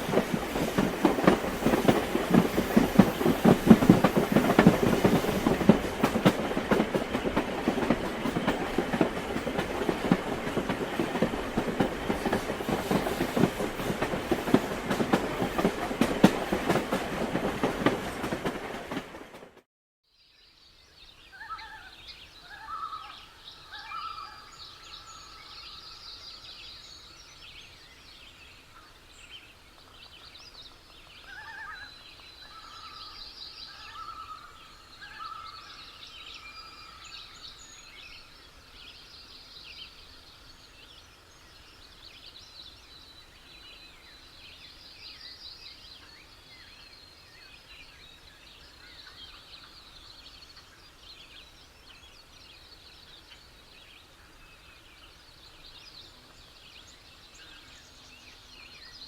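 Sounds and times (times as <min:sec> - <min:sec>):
train wheels clickety-clack: 0:00.0 - 0:19.7.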